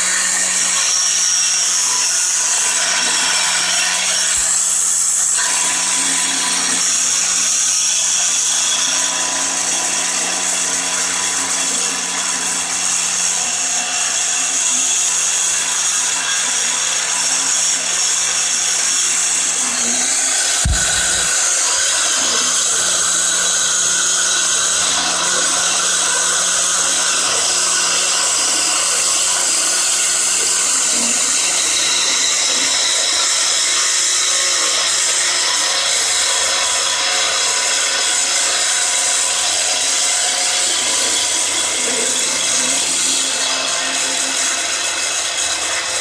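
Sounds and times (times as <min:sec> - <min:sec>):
power tool whirring: 0:00.0 - 0:46.0
low thump: 0:20.6 - 0:22.0.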